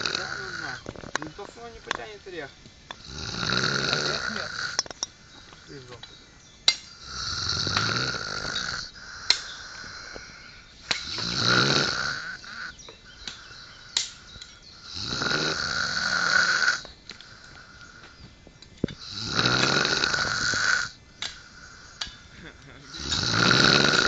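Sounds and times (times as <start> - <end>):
man snoring heavily: 0.0 - 0.8, 3.0 - 4.8, 6.9 - 12.8, 14.8 - 18.0, 19.0 - 22.0, 22.7 - 24.0.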